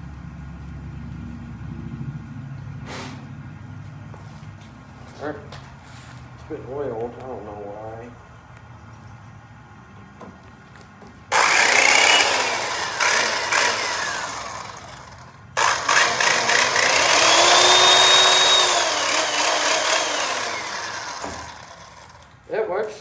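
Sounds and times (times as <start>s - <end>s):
power tool motor whining: 11.3s - 22.4s.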